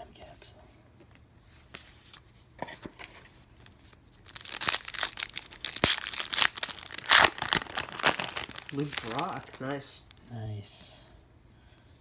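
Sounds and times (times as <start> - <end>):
wrapper crinkling and tearing: 4.2 - 10.2.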